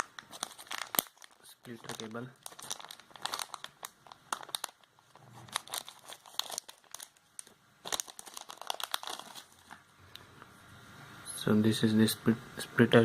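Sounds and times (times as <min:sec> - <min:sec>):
packaging crinkling: 0:00.0 - 0:09.9.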